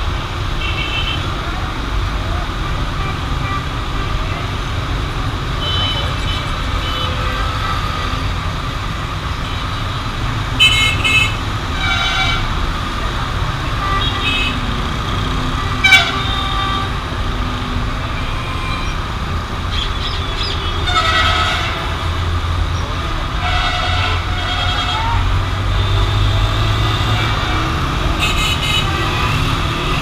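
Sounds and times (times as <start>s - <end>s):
road traffic: 0.0s - 30.0s
vehicle horns honking: 5.6s - 8.4s, 10.6s - 12.5s, 13.6s - 17.1s, 19.8s - 22.0s, 23.4s - 30.0s.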